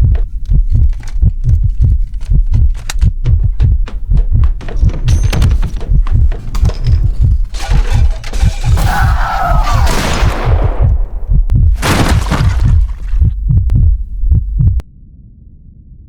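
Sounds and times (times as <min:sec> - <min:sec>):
sharp clicks: 0:00.0 - 0:06.5
rhythmic low thumping: 0:00.0 - 0:14.8.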